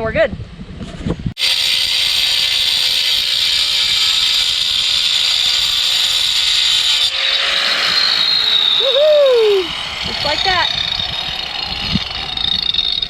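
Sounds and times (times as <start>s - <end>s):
angle grinder cutting steel: 1.4s - 13.0s
motor whine: 6.3s - 13.0s.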